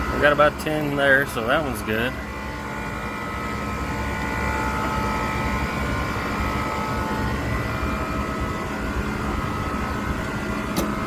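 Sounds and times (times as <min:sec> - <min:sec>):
mechanical drone with whining tones: 0:00.0 - 0:11.0.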